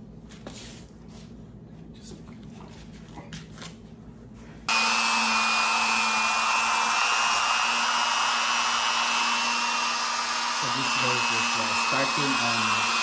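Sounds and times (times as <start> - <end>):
electric power tool whining: 4.7 - 13.0.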